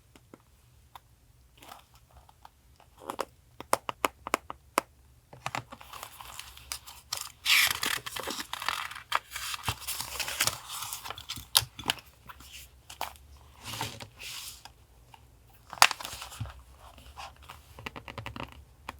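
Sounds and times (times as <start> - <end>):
paper rustling and crinkling: 5.8 - 14.7.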